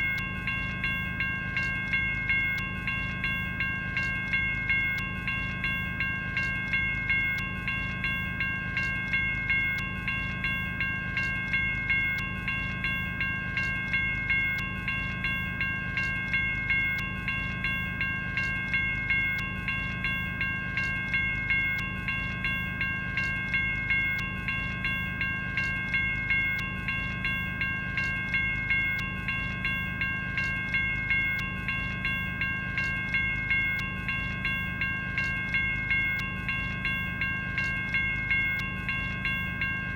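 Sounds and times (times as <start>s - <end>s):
railroad crossing bell ringing: 0.0s - 39.9s.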